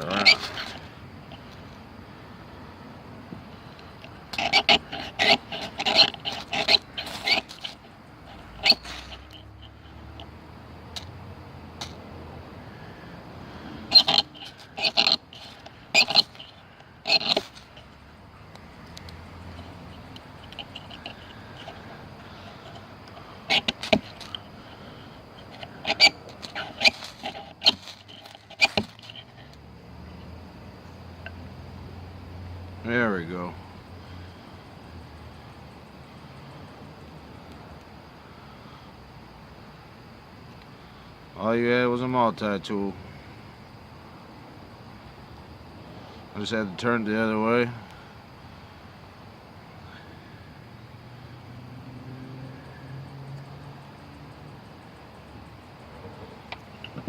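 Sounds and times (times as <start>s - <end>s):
multitool scraping ferro rod: 0.0s - 1.7s, 4.0s - 10.3s, 13.7s - 18.0s, 19.0s - 29.5s.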